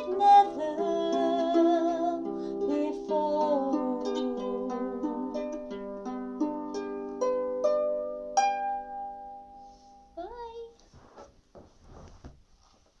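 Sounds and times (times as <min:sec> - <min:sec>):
soft rustling: 0:09.6 - 0:13.0.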